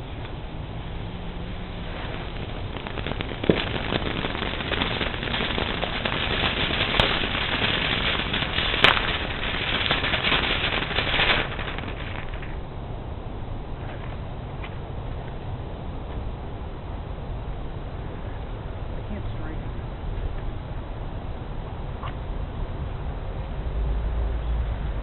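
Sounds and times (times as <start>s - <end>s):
fireworks crackling: 0.0s - 13.9s
firework bangs: 1.4s - 12.8s.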